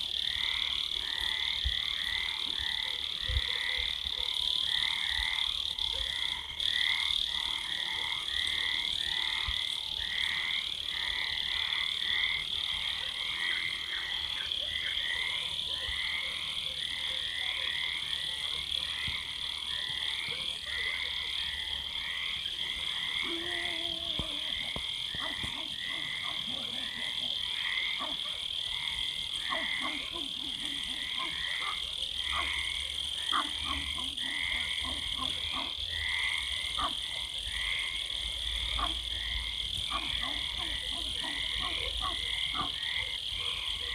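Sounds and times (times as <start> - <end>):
crickets trilling: 0.0 - 43.9
frogs calling: 0.0 - 43.9.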